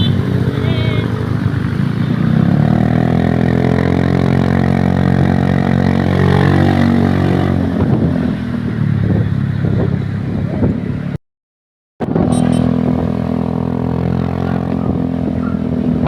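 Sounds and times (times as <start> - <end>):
bus horn chord: 0.0 - 0.2
engine and road noise: 0.0 - 11.2, 12.0 - 16.0.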